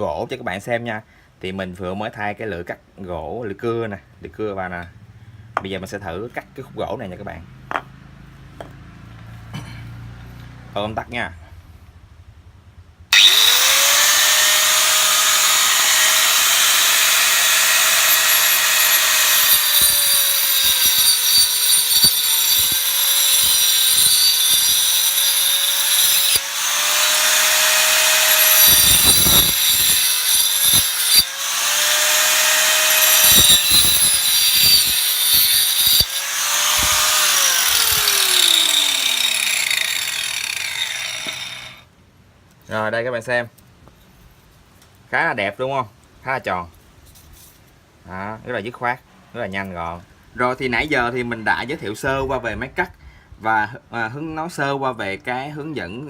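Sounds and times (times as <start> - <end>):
angle grinder whine: 13.1 - 41.8
saw blade rasping through log: 13.2 - 41.8.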